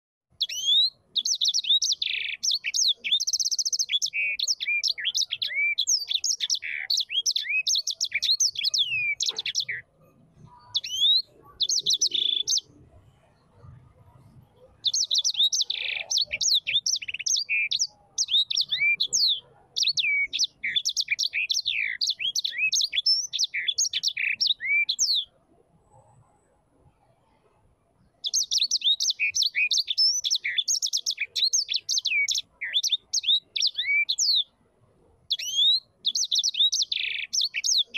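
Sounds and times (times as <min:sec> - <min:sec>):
small bird warbling song: 0:00.3 - 0:27.4, 0:28.0 - 0:37.9.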